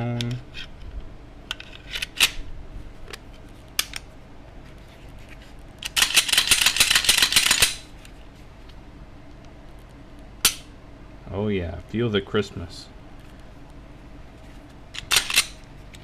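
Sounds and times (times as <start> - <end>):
sharp metal click: 5.8 - 7.8, 10.4 - 10.7.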